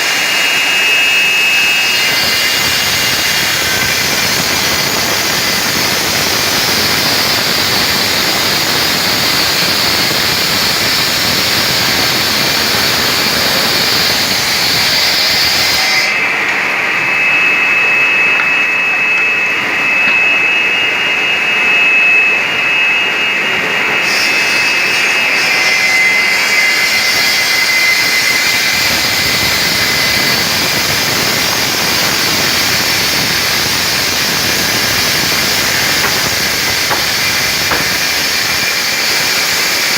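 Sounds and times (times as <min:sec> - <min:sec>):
stone-cutting machine hissing: 0:00.0 - 0:39.9
thin high whine: 0:15.5 - 0:24.0.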